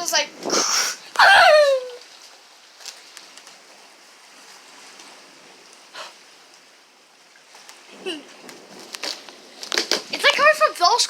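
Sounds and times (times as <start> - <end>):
light rain hiss: 0.0 - 11.0
raindrop ticks: 2.2 - 3.9, 4.9 - 11.0.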